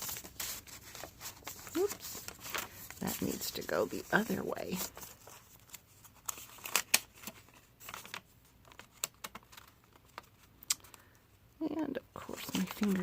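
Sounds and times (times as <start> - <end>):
paper pages rustling: 0.0 - 11.0, 12.2 - 13.0
sharp paper crackles: 0.0 - 11.0, 12.2 - 13.0.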